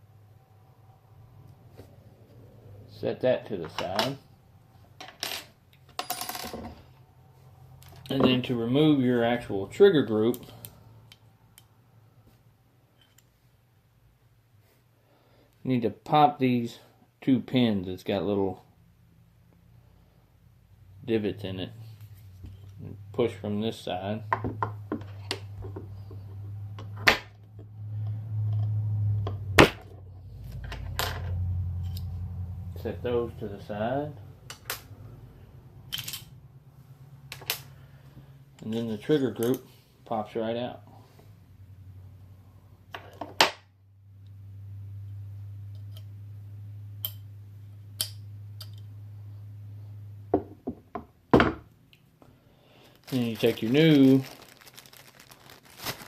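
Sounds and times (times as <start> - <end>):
steady low hum: 0.0 - 38.8.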